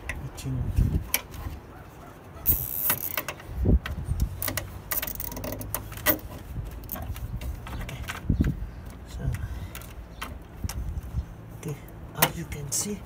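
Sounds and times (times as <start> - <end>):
handling clicks and knocks: 1.0 - 1.6, 2.4 - 11.2, 12.0 - 13.0
cable ties zipping: 2.4 - 3.3.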